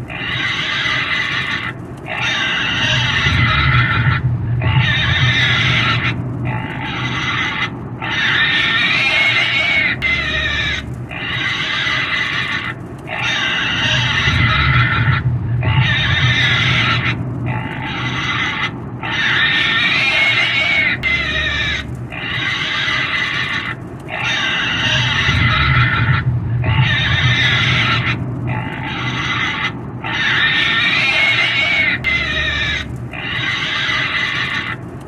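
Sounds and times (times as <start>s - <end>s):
pig squealing: 0.1s - 34.8s.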